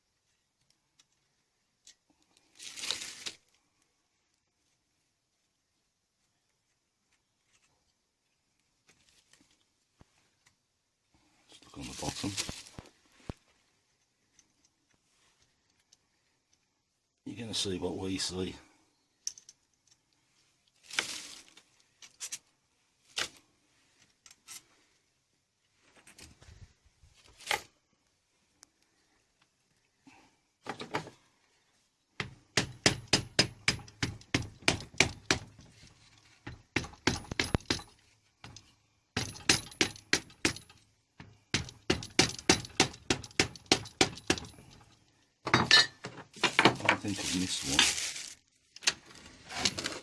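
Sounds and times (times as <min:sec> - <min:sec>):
tools clinking on metal: 0:45.5 - 0:46.7.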